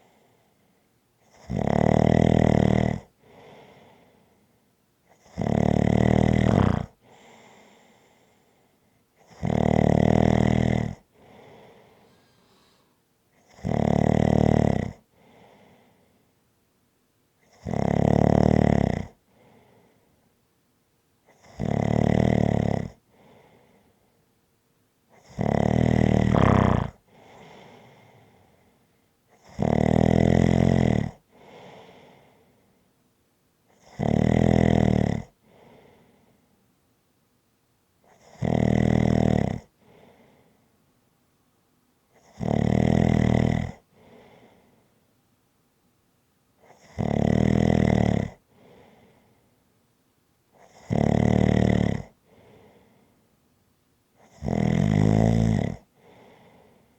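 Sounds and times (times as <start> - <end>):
faint breath sound: 0.0 - 1.0, 3.1 - 4.8, 6.5 - 9.1, 11.0 - 13.2, 15.0 - 16.4, 19.2 - 20.4, 23.0 - 24.3, 26.3 - 29.3, 31.3 - 33.0, 35.4 - 36.7, 39.7 - 40.8, 43.8 - 45.1, 48.4 - 49.7, 52.2 - 53.4, 55.8 - 56.9
loud buzzing snore: 1.3 - 3.1, 5.2 - 7.0, 9.3 - 11.0, 12.0 - 15.0, 17.5 - 19.2, 21.4 - 23.0, 25.2 - 27.0, 29.4 - 31.2, 33.8 - 35.3, 38.2 - 39.7, 42.2 - 43.8, 46.7 - 48.4, 50.6 - 52.1, 54.2 - 55.9.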